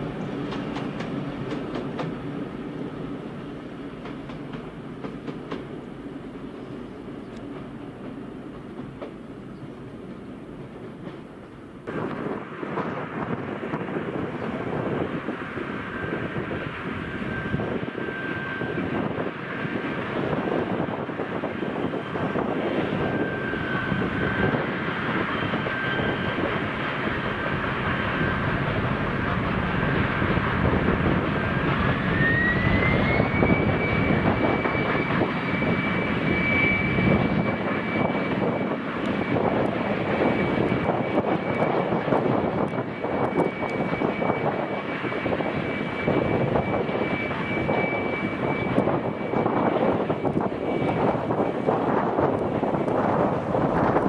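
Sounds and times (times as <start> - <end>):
diesel locomotive engine running: 0.0 - 54.0
high whine rising in pitch: 27.9 - 38.1.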